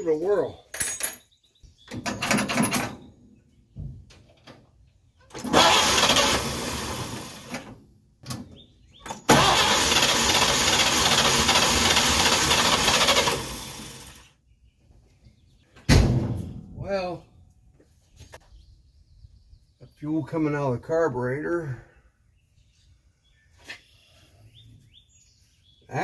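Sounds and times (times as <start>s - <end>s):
truck engine cranking on starter: 5.3s - 7.8s, 9.0s - 14.3s.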